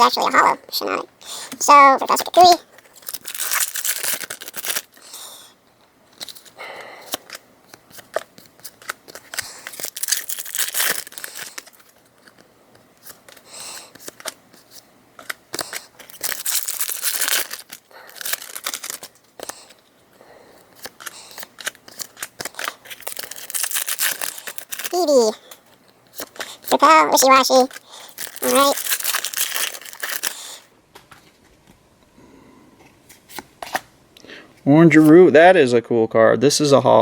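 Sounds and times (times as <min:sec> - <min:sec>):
foil packs tearing and crinkling: 0:02.9 - 0:05.0, 0:08.7 - 0:12.3, 0:15.2 - 0:19.7, 0:21.4 - 0:25.3, 0:27.2 - 0:30.7.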